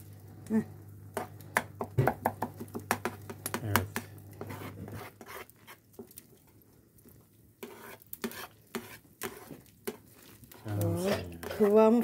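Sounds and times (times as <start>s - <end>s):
spoons stirring and scraping pan: 1.1s - 1.8s, 2.4s - 6.5s, 7.5s - 12.0s.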